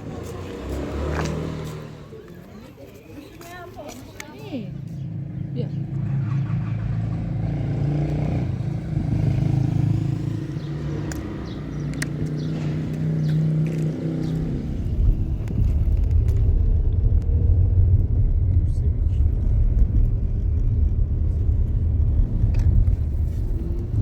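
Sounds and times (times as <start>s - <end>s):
car engine running: 13.7s - 24.0s.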